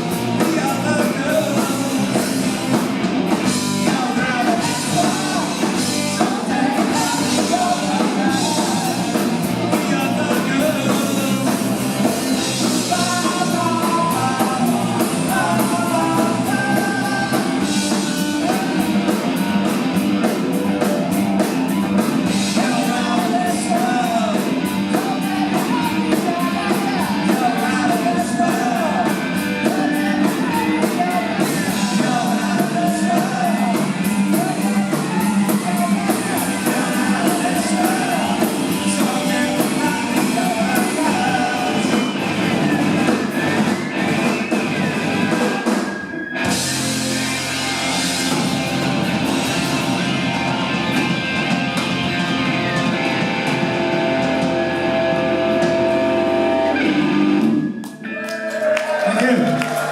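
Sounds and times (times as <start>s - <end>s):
drums: 0.0s - 59.9s
electric guitars: 0.0s - 59.9s
person singing: 0.1s - 2.5s, 3.8s - 19.3s, 22.2s - 43.7s.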